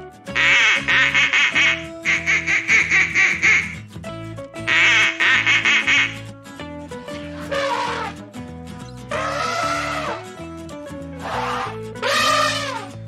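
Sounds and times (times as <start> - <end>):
background music: 0.0 - 13.0
ducks quacking: 0.4 - 3.8, 4.7 - 6.2, 7.5 - 8.2, 9.1 - 10.2, 11.2 - 12.8.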